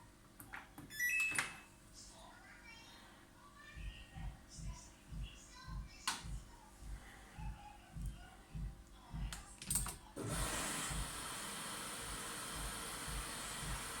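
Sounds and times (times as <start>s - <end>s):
washing machine running: 10.2s - 14.0s.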